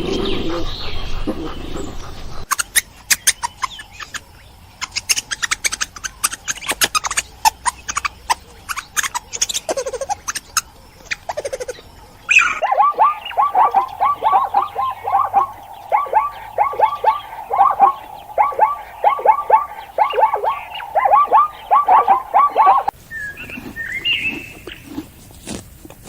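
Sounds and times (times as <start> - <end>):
animal clicking chirps: 2.5 - 25.0
animal falling chirps: 12.3 - 22.9.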